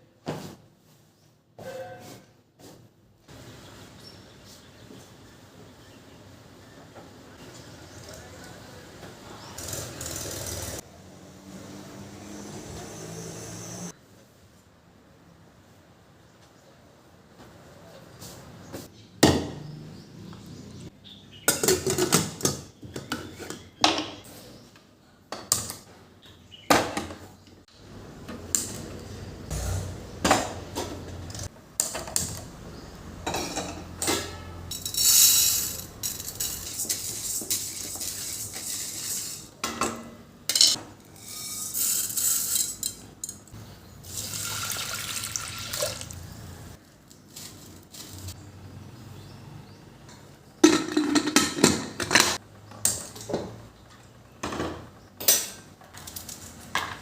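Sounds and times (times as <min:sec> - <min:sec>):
dishes and cutlery clattering: 0:21.5 - 0:24.2, 0:33.2 - 0:43.6, 0:50.6 - 0:53.5
tap water running: 0:44.1 - 0:46.2.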